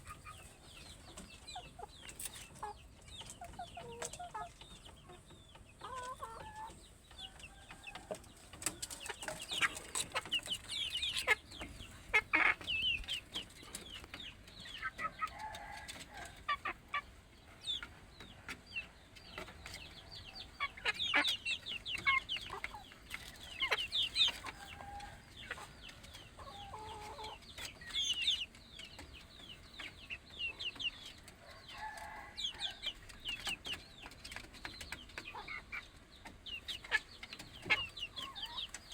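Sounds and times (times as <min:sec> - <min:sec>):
chickens clucking: 0:00.0 - 0:38.9
chicks peeping: 0:00.0 - 0:38.9.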